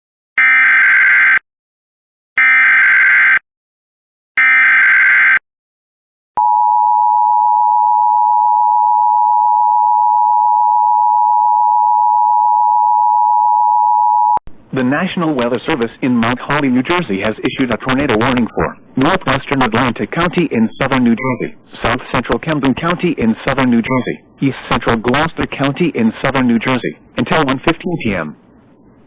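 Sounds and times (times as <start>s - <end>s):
steady attention tone: 16.2s - 24.3s.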